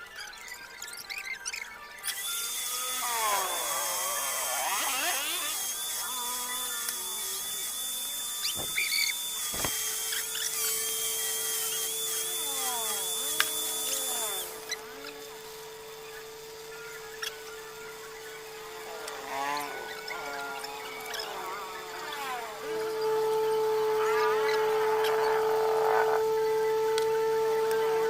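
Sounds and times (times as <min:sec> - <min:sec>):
squeaky chirps: 0:00.0 - 0:15.3
power tool whining: 0:00.9 - 0:28.0.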